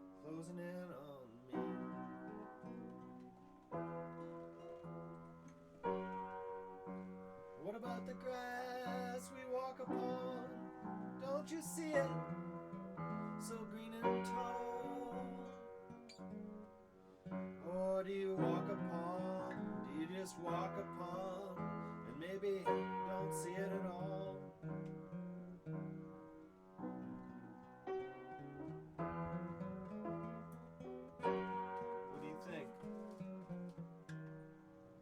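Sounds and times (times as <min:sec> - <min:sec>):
acoustic guitar playing: 0:00.0 - 0:35.0
person singing: 0:17.7 - 0:24.4.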